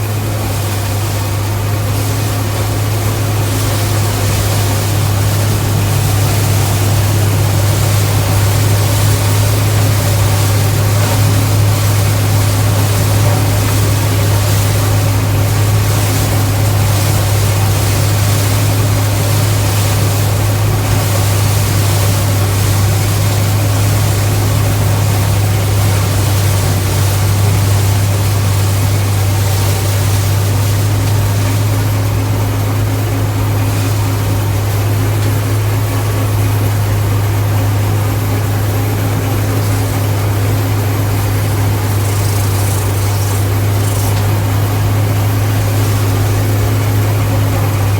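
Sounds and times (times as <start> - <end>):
combine harvester humming: 0.0 - 47.9.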